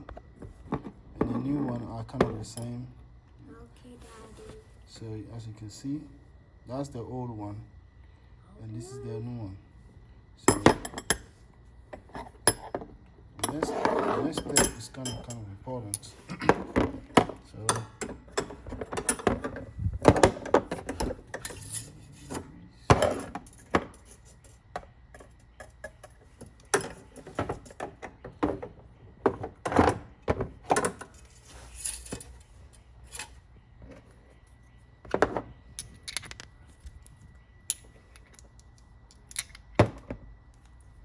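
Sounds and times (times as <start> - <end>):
metallic clicks and clinks: 35.8 - 39.8.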